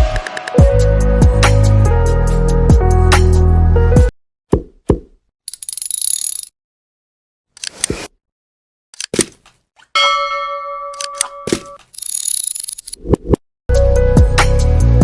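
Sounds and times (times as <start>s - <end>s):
small clicks and clinks: 5.5s - 6.5s
bell-like ding: 10.0s - 11.8s.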